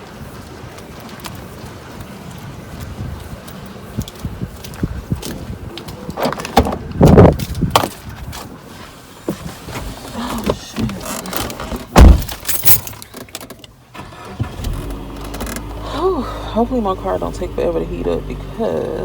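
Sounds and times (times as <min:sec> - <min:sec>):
handling noises and knocks: 0:05.2 - 0:08.6
car door shutting: 0:05.9 - 0:08.5, 0:09.2 - 0:16.1.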